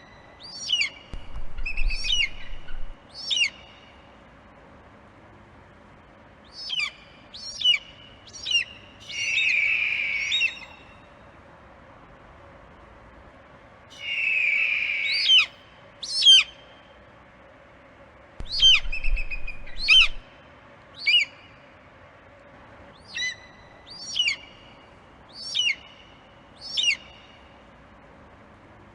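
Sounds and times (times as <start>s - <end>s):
eagle high-pitched piping calls: 1.5s - 3.6s, 7.6s - 10.9s, 14.0s - 16.5s, 18.5s - 20.2s.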